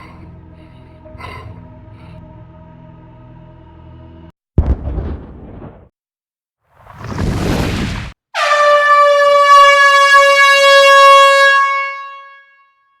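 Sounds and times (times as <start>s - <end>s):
air horn blast: 8.4s - 12.8s.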